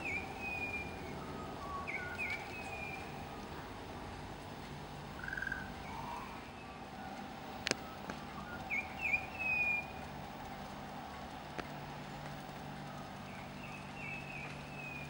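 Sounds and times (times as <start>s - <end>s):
bird chirping: 0.0s - 3.1s, 8.4s - 9.9s.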